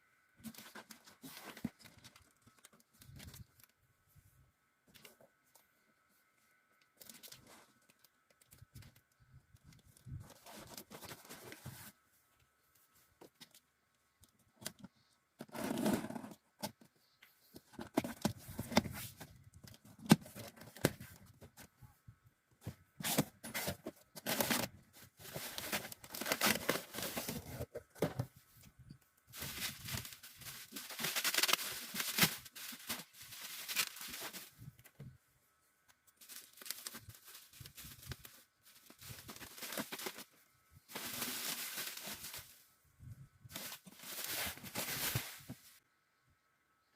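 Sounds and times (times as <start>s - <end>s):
plastic packaging rustling and tearing: 23.0s - 28.0s, 29.3s - 34.8s, 36.2s - 42.6s, 43.5s - 45.8s.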